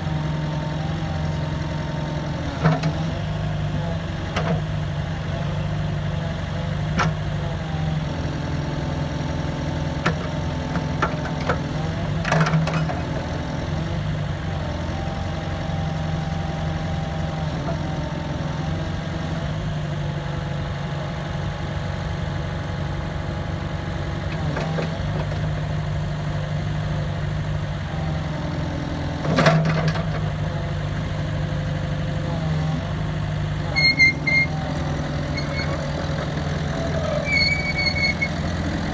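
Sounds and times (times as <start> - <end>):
excavator diesel engine: 0.0 - 38.9
hydraulic whine: 33.6 - 38.9
high squeaks: 33.7 - 38.6.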